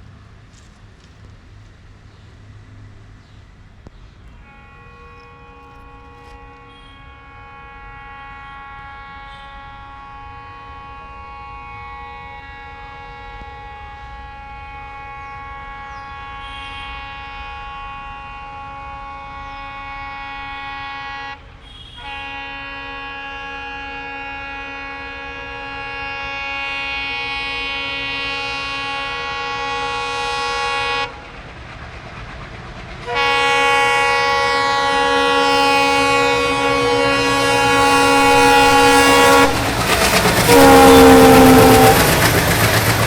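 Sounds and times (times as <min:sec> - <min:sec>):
diesel locomotive engine chugging: 0:00.0 - 0:43.0
multi-tone train horn: 0:04.3 - 0:31.3, 0:33.0 - 0:43.0.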